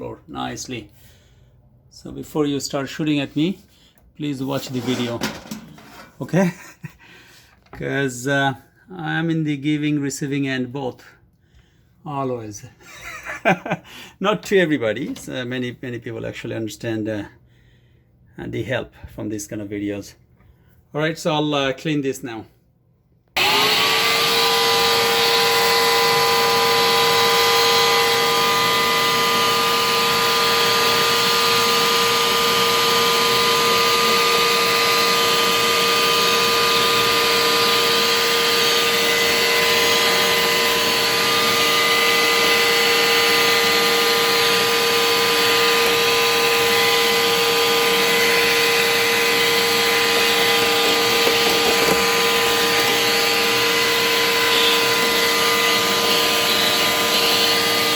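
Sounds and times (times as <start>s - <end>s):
vacuum cleaner whining: 23.4s - 57.9s.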